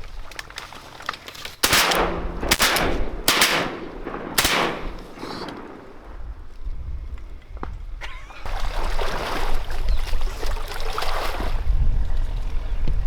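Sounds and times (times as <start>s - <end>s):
low rumble: 1.9s - 7.1s
water splashing and sloshing: 8.2s - 12.3s.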